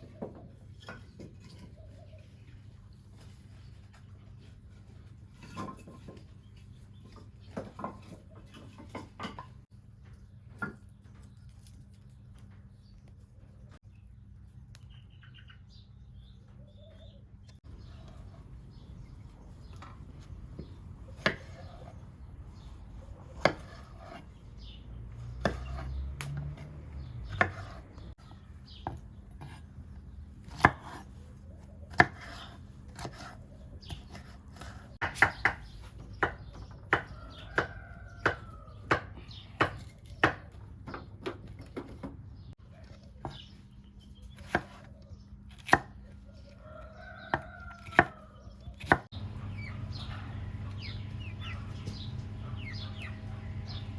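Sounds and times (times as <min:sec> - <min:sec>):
knife chopping on cutting board: 0:21.2 - 0:21.9, 0:23.4 - 0:24.2, 0:25.3 - 0:27.8, 0:31.9 - 0:40.4.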